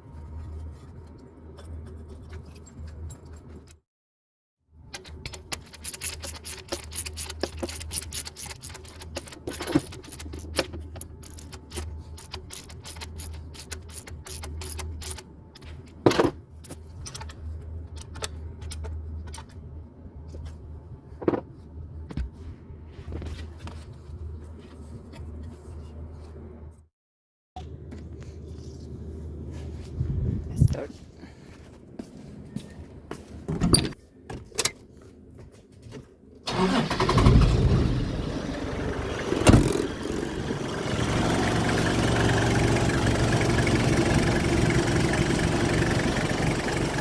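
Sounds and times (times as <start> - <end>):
metal hand tools clinking: 5.7 - 15.2.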